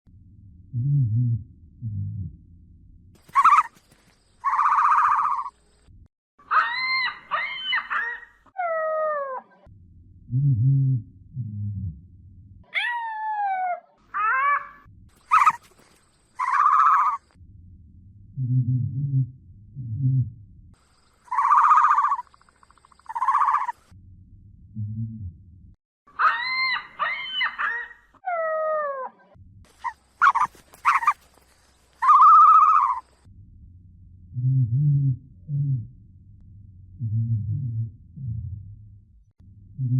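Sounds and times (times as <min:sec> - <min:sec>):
animal calls: 0:03.2 - 0:05.6, 0:06.4 - 0:09.6, 0:12.7 - 0:17.3, 0:21.2 - 0:23.8, 0:26.1 - 0:33.2
short sharp yelps: 0:32.0 - 0:33.0.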